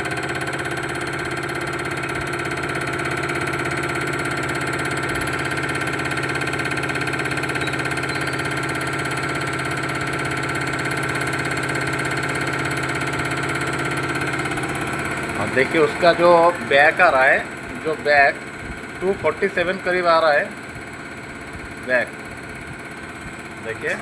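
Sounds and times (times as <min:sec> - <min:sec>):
test bench motor and pump humming: 0:00.0 - 0:24.0
fast even injector pulsing: 0:01.1 - 0:10.3, 0:12.9 - 0:20.5, 0:23.6 - 0:24.0.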